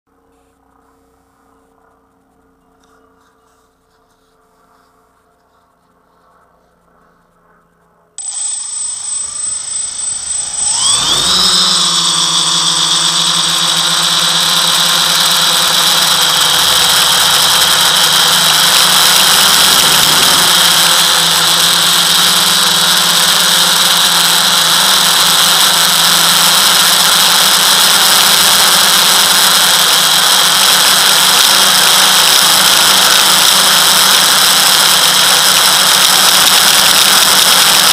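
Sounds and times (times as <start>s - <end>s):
drone propellers buzzing: 8.2s - 37.9s.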